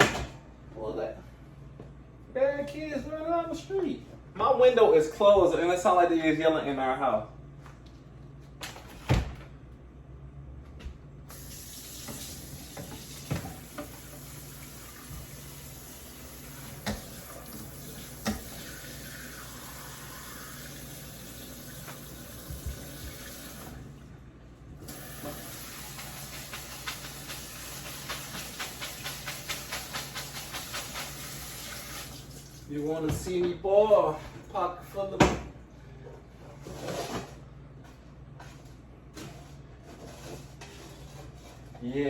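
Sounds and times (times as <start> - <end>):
tap running into sink: 11.3 - 15.6, 16.6 - 18.9, 24.9 - 32.4.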